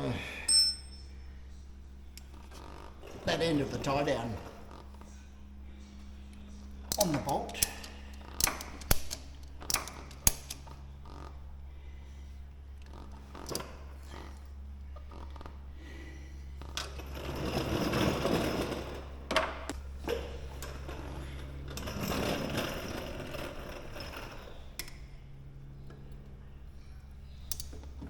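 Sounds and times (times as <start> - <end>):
steady low hum: 0.0 - 28.0
ratchet strap rattling: 6.9 - 11.3.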